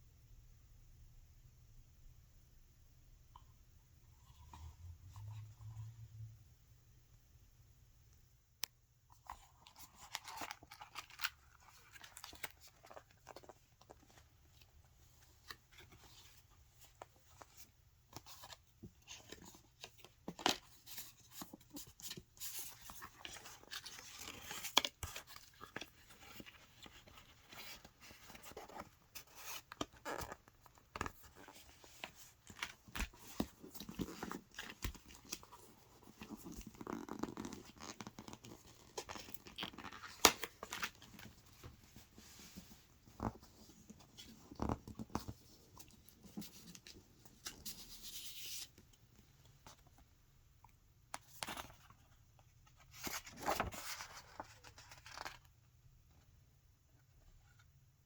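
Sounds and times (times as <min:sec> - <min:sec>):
paper rustling and crinkling: 0:09.1 - 0:49.0, 0:51.2 - 0:55.6.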